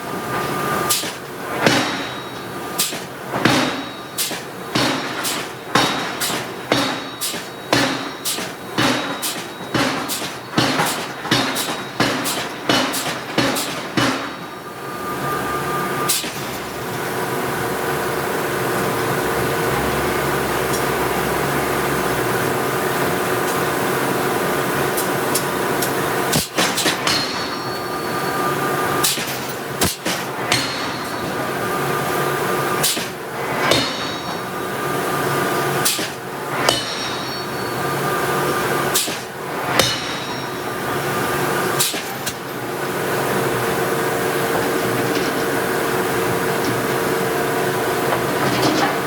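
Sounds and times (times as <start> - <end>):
hum of shop machinery: 0.0 - 49.0
forging hammer striking steel: 0.9 - 14.9, 16.0 - 16.8, 24.9 - 42.9.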